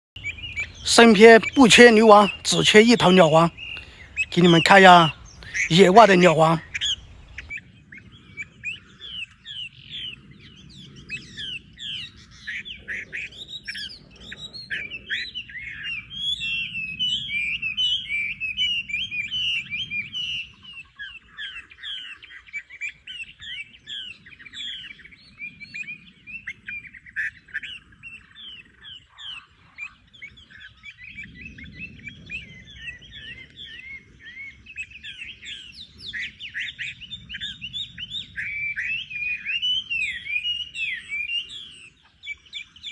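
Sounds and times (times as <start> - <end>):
small birds chirping: 0.2 - 7.5, 21.4 - 42.9.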